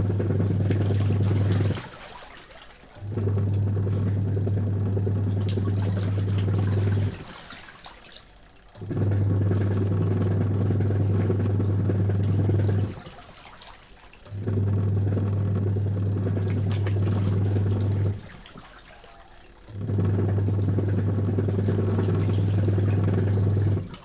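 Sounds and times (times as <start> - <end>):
factory machine humming: 2.7 - 7.6.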